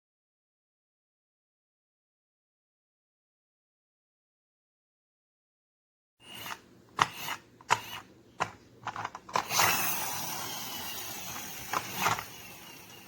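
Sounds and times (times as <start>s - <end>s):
toy car flywheel whirring: 6.2s - 13.0s.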